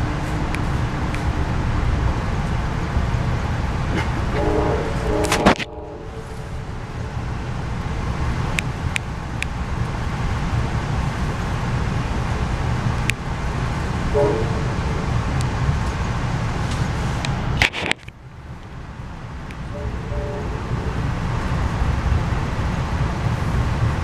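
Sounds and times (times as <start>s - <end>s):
train rumbling on track: 0.0s - 24.0s
brief tone: 14.2s - 15.5s, 19.7s - 21.5s.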